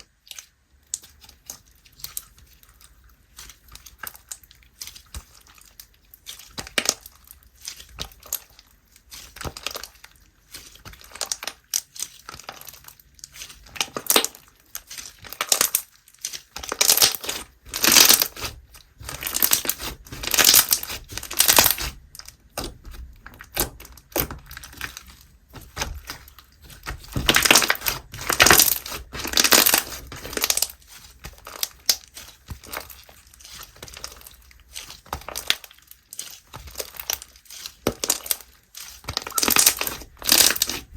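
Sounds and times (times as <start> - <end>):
foam slime squeezed crunchily: 13.4 - 22.2, 25.6 - 40.9.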